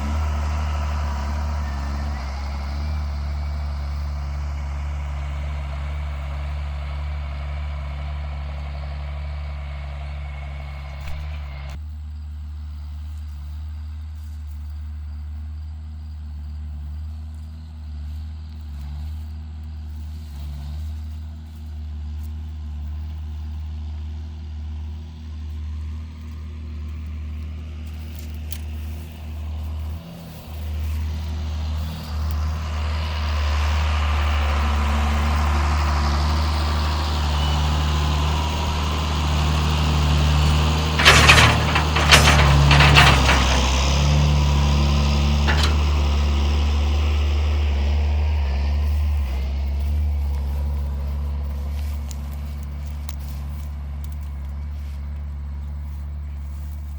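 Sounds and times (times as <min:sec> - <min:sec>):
tractor diesel engine running: 0:00.0 - 0:12.1, 0:12.7 - 0:56.9
sharp metal clanks: 0:40.9 - 0:46.4.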